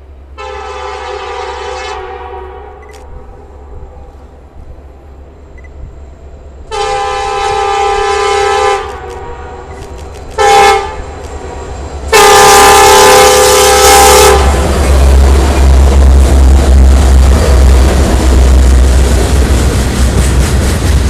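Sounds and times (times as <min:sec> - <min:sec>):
locomotive air horn blasts: 0:00.4 - 0:02.8, 0:06.7 - 0:09.7, 0:10.4 - 0:11.2, 0:12.1 - 0:14.7.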